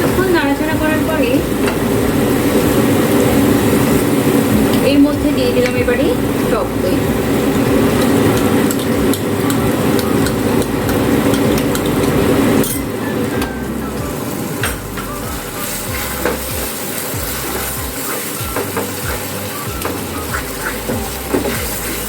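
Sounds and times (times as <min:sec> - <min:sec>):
mixture sizzling in a pan: 0:00.0 - 0:22.0
spatula scraping a frying pan: 0:15.5 - 0:22.0.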